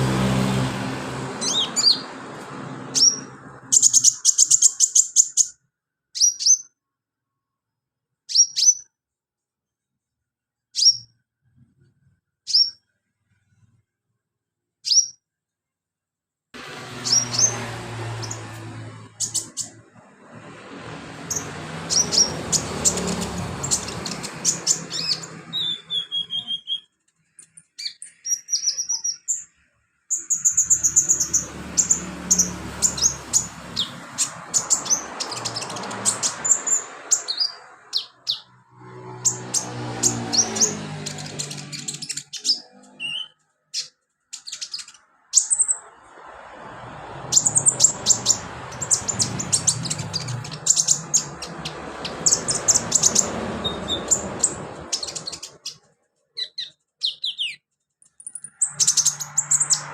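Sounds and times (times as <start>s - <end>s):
sunbird singing high chirps: 1.4s - 2.1s, 2.9s - 6.8s, 8.3s - 8.9s, 16.9s - 20.0s, 21.2s - 26.9s, 27.5s - 38.6s, 39.2s - 45.9s, 47.3s - 55.8s, 56.4s - 59.9s.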